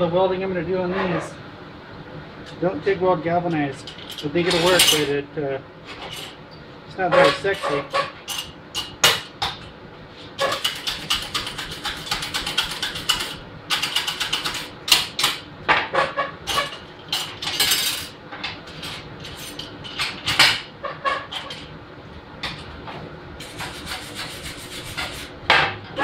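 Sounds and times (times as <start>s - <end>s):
metal tools clinking and rattling: 3.8s - 5.2s, 16.5s - 18.2s.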